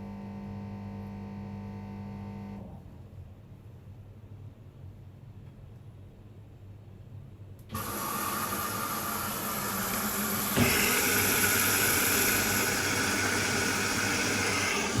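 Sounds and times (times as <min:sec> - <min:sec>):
washing machine filling with water: 0:07.7 - 0:15.0.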